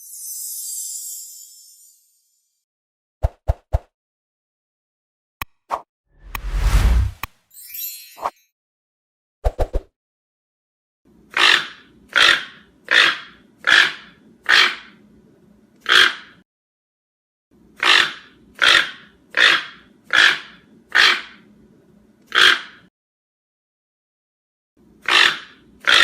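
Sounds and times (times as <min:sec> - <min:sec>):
toucan croaking calls: 0:11.3 - 0:14.8, 0:17.8 - 0:21.2, 0:22.3 - 0:22.7, 0:25.1 - 0:26.0.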